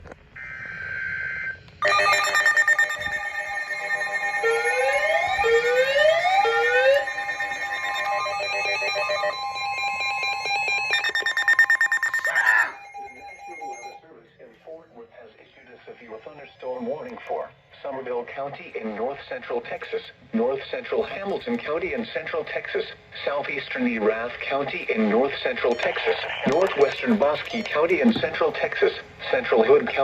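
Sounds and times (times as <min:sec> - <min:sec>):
weather radio alarm beeps: 0:00.4 - 0:14.1, 0:25.0 - 0:28.5.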